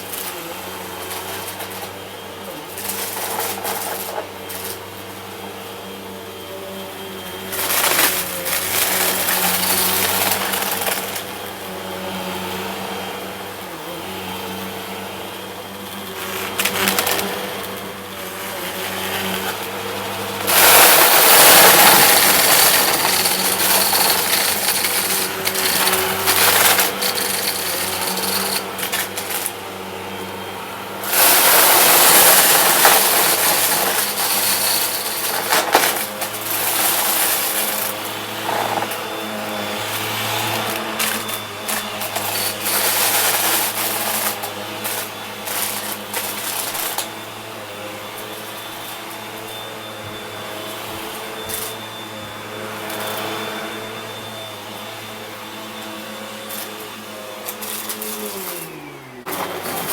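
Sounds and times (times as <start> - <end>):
vacuum cleaner running: 0.0 - 59.9
confetti rattling through vacuum: 19.2 - 29.6, 31.0 - 38.0.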